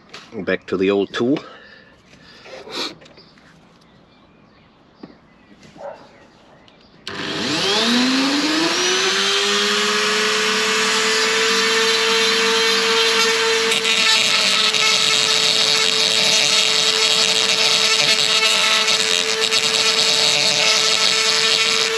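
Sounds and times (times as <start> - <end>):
rotary tool whining: 7.1 - 21.9.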